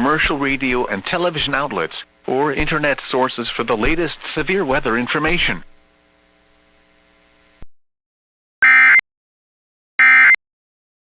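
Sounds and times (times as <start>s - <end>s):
faint steady hum: 0.0s - 7.7s.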